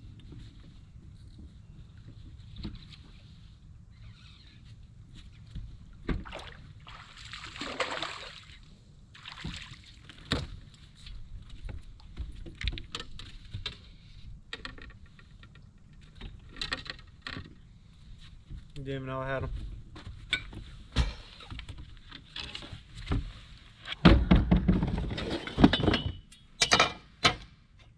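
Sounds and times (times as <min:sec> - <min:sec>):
water splashing: 0:06.2 - 0:08.6.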